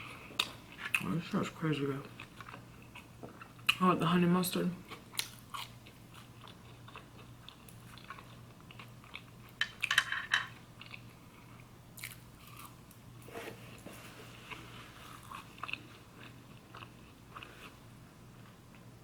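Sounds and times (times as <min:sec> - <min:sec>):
quiet chewing: 0:01.9 - 0:03.8, 0:04.9 - 0:09.6, 0:13.3 - 0:18.9.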